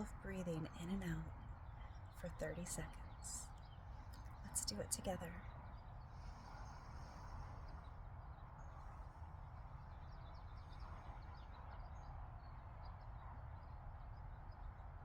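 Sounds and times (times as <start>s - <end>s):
steady low rumble: 0.0s - 5.5s
faint birds chirping: 0.0s - 15.0s.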